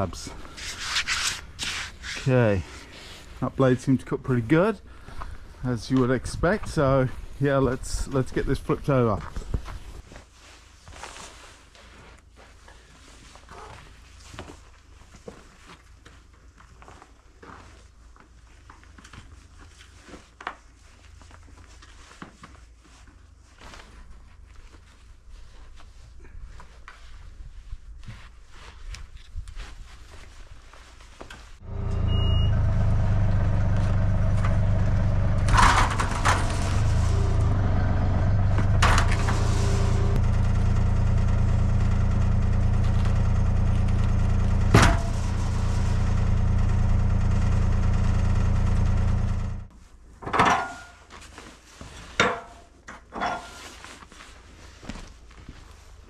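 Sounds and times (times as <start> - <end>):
motor machine humming: 31.6 - 49.7
clunks and knocks: 31.7 - 40.3, 43.9 - 46.1.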